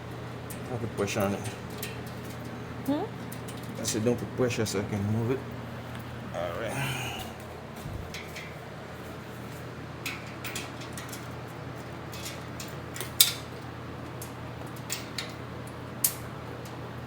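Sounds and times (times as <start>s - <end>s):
steady low hum: 0.0s - 11.1s.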